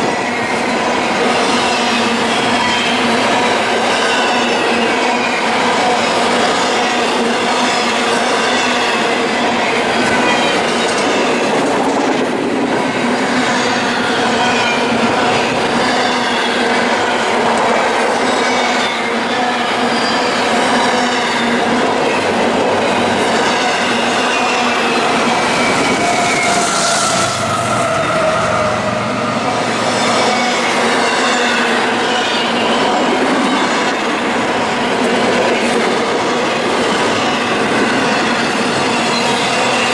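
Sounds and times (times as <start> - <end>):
train wheels rumbling on rails: 0.0 - 39.9
wheels squealing: 19.7 - 33.8.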